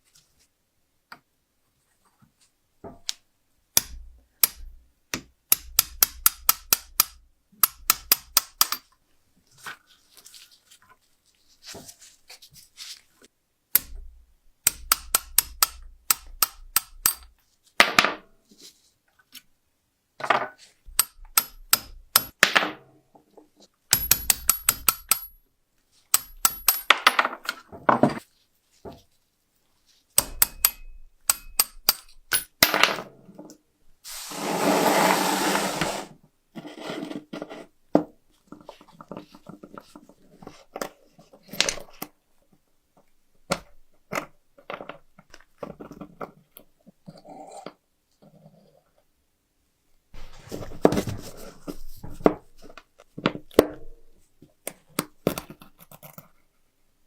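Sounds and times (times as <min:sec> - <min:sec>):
metal parts clicking and clinking: 0:23.9 - 0:25.4, 0:26.1 - 0:27.6, 0:30.2 - 0:32.6
hiss or scrub: 0:34.0 - 0:36.2.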